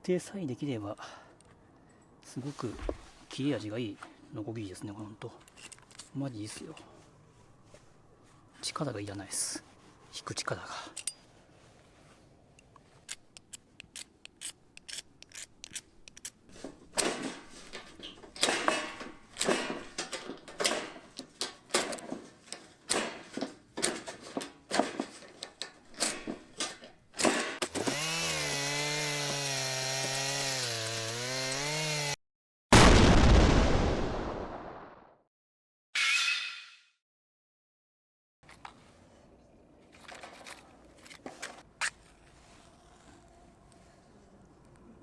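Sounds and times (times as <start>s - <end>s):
hand saw cutting wood: 27.2s - 32.2s.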